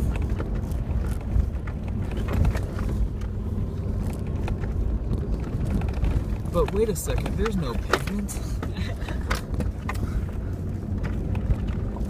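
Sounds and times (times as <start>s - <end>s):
low engine and tyre rumble: 0.0s - 12.0s
knocks and rattles: 4.0s - 10.3s.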